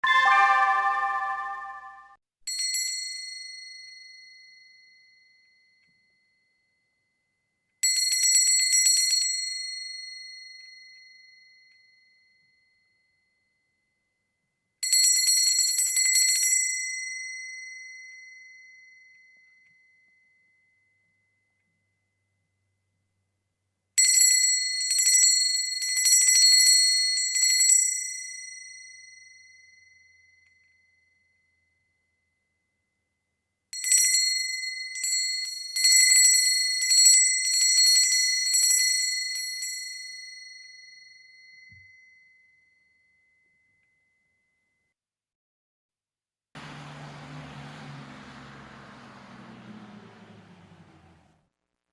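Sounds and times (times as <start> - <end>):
doorbell ringing: 0.0 - 3.0
small metal doorbell ringing: 0.0 - 7.2, 7.8 - 14.0, 14.8 - 22.5, 24.0 - 32.6, 33.7 - 44.9.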